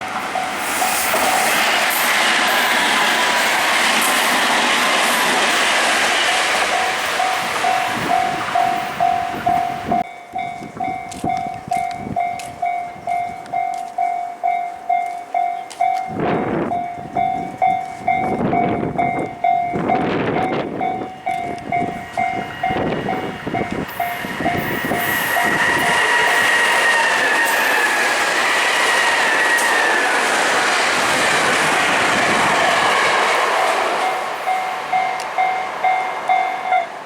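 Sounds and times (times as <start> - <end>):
train with high whine: 0.0 - 37.0
level crossing bell ringing: 6.7 - 25.6, 34.1 - 36.9.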